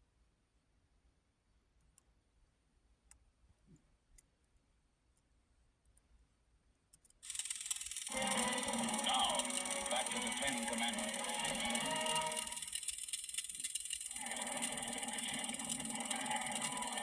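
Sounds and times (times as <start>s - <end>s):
faint clicks: 6.9s - 8.1s
faint steady high whine: 7.4s - 17.0s.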